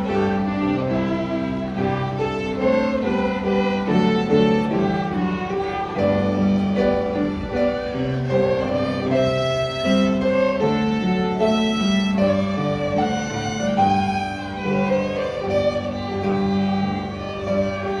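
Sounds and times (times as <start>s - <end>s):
lower accompaniment: 0.0s - 18.0s
violins playing a melody: 0.0s - 18.0s.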